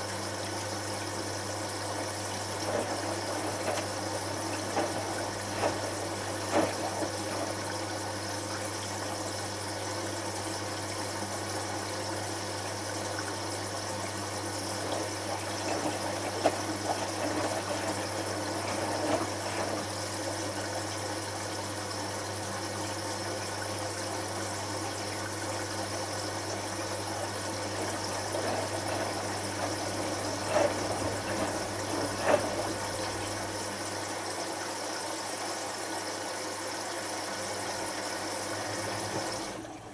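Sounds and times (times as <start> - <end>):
washing machine humming: 0.0 - 39.9
water running: 1.3 - 9.8, 12.9 - 23.8, 24.5 - 34.4.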